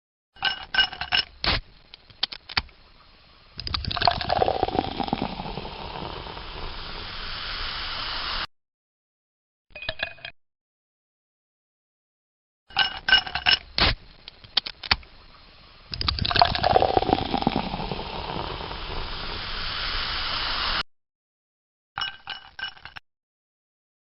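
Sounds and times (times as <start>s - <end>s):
ice cubes clinking in a glass: 0.4s - 1.3s, 12.7s - 13.7s, 22.0s - 23.0s
liquid pouring over ice: 3.6s - 7.2s, 15.9s - 19.4s.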